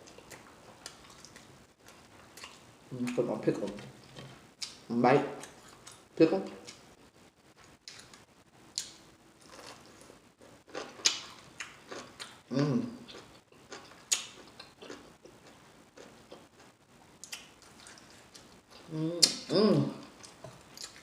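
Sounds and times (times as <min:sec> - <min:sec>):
wet chewing and smacking: 0:00.0 - 0:02.7, 0:08.8 - 0:12.4, 0:13.1 - 0:18.9, 0:20.2 - 0:21.0
person humming: 0:18.8 - 0:20.1.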